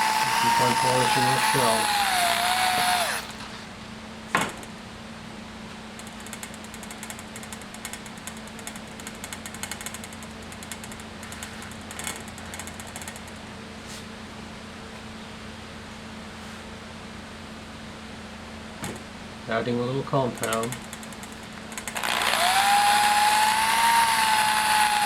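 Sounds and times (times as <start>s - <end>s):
buffing machine motor whine: 0.0s - 3.7s, 21.8s - 25.0s
sharp click: 20.3s - 22.6s.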